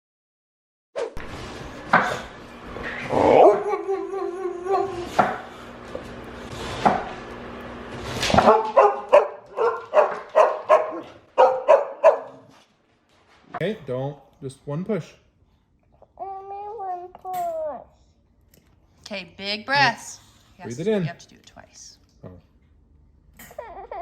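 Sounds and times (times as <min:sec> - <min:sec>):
dog whining: 0:02.8 - 0:05.6
dog barking: 0:08.4 - 0:12.6.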